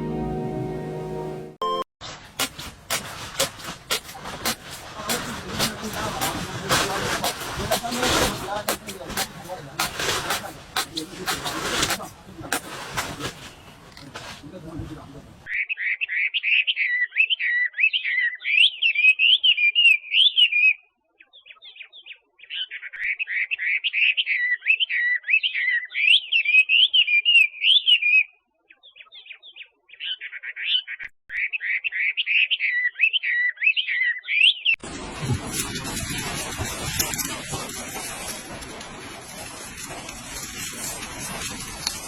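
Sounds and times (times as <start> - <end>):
steady rushing hiss: 34.9 - 42.0.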